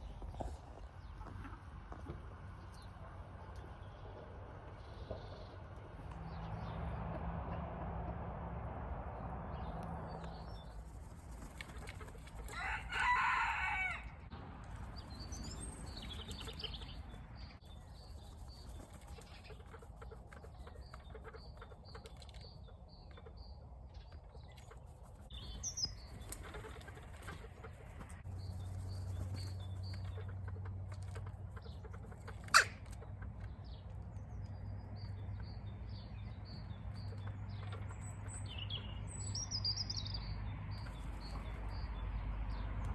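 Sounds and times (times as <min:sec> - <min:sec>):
birds chirping: 0:09.5 - 0:42.9
drawn-out bird call: 0:24.2 - 0:33.8.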